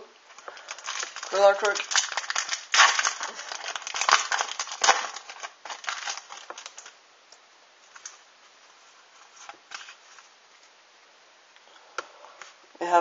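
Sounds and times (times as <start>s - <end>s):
foil wrapper tearing and crinkling: 0.3s - 7.0s.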